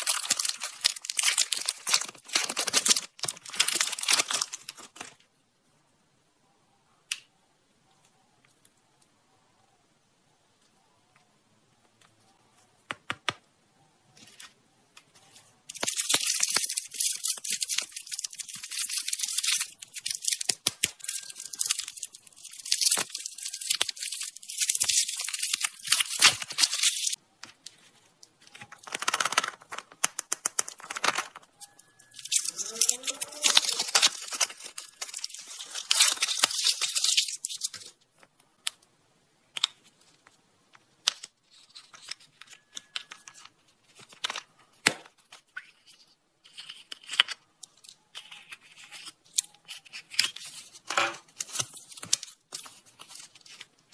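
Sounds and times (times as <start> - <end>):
plastic wrappers crinkling and tearing: 0.0 - 5.2, 14.2 - 38.3, 41.1 - 53.9.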